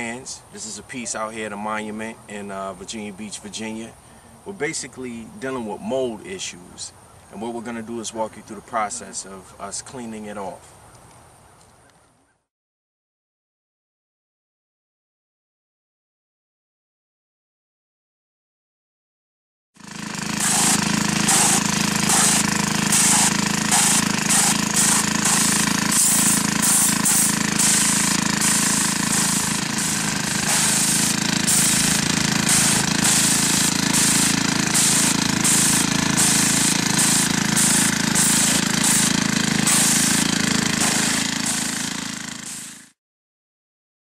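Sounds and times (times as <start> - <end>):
pressure washer engine humming: 19.8 - 43.0
high-pressure water jet hissing: 19.9 - 42.9.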